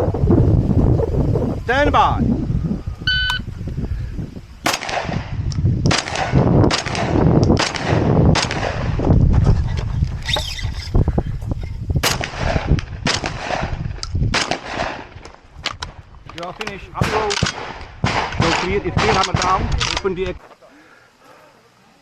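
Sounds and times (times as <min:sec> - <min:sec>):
gunshots: 0:04.6 - 0:05.3, 0:05.9 - 0:08.9, 0:12.0 - 0:15.8, 0:17.0 - 0:20.0.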